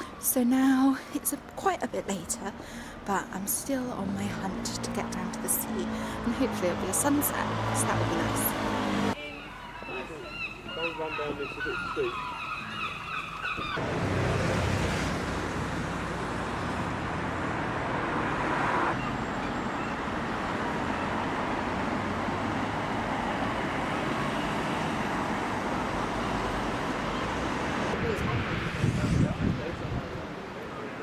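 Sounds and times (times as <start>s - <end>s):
road traffic noise: 0.0s - 31.0s
vehicles passing: 0.0s - 31.0s.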